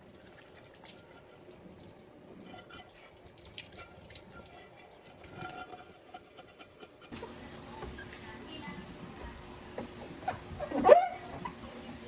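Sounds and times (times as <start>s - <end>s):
water drips and splashes: 0.0s - 6.0s.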